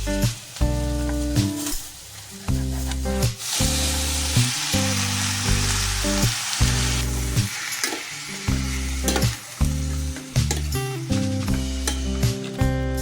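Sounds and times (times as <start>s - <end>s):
food sizzling in hot oil: 0.0s - 13.0s
soft background music: 0.0s - 13.0s.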